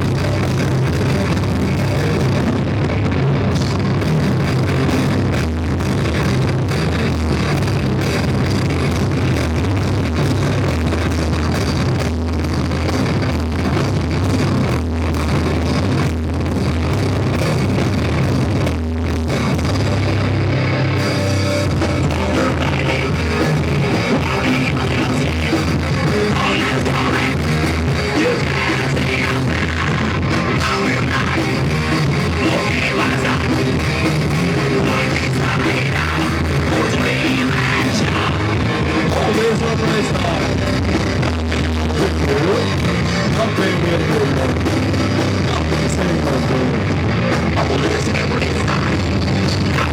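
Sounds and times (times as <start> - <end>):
rock band playing live: 0.0 - 49.9.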